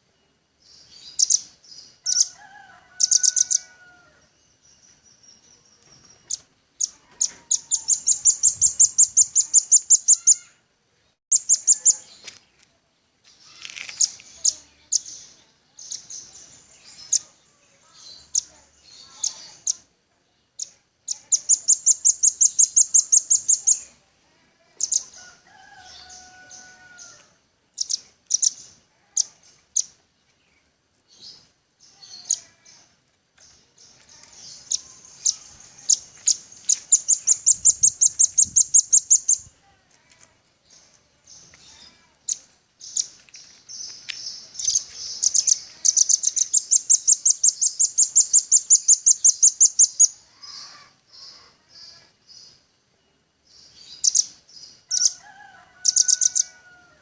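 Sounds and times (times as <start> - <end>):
bird trilling: 1.0 - 4.0, 6.2 - 10.6, 11.3 - 12.1, 20.6 - 23.9, 34.2 - 39.5, 44.3 - 51.4, 55.8 - 56.6.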